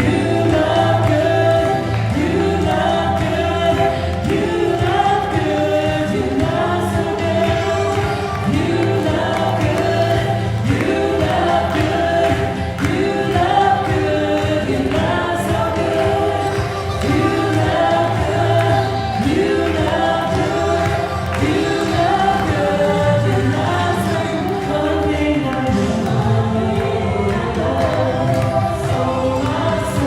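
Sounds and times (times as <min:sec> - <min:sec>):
instrumental backing: 0:00.0 - 0:30.0
voices singing worship song: 0:00.0 - 0:30.0.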